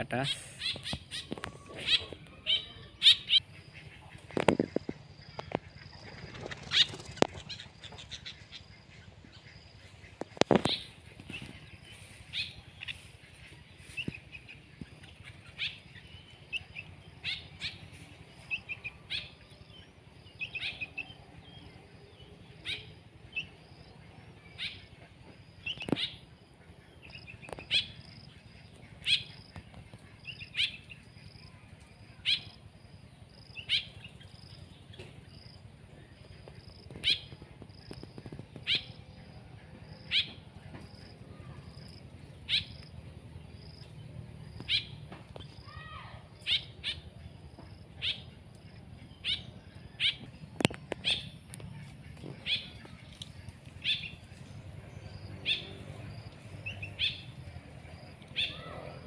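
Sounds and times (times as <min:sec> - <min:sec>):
small bird chipping: 0:00.0 - 0:17.8, 0:27.0 - 0:32.6, 0:36.4 - 0:43.0, 0:43.6 - 0:45.8
bird warbling: 0:00.0 - 0:17.9, 0:40.0 - 0:40.5.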